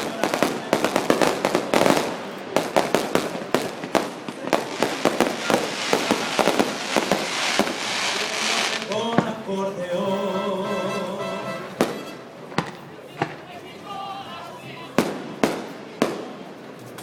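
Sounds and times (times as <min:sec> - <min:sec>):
fireworks bangs and crackles: 0:00.0 - 0:09.4, 0:11.8 - 0:13.5, 0:14.9 - 0:17.0.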